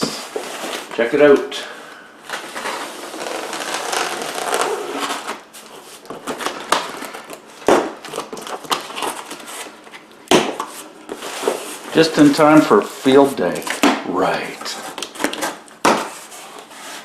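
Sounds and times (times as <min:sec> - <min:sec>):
cardboard box scraping and tearing: 0:02.5 - 0:05.4.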